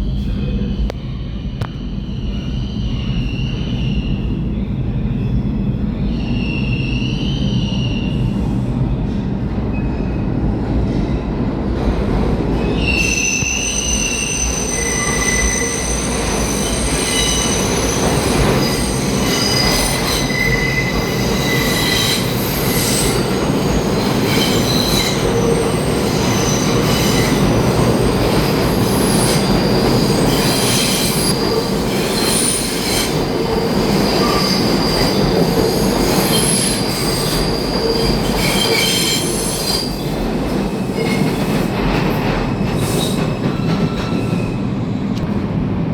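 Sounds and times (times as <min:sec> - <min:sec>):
train wheels squealing on rails: 0:00.0 - 0:11.2, 0:12.5 - 0:45.2
train rumbling: 0:00.0 - 0:45.9.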